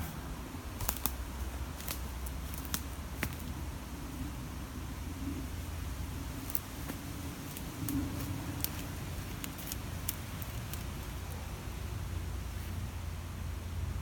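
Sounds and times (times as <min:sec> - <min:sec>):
steady low rumble: 0:00.0 - 0:14.0
twigs crackling and snapping: 0:00.7 - 0:03.6, 0:06.2 - 0:11.6.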